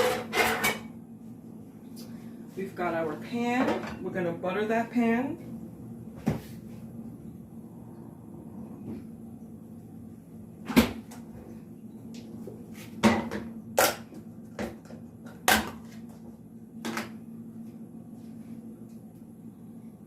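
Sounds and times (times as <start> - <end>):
steady low hum: 0.0 - 20.0
kitchen knocks and clunks: 13.0 - 14.0.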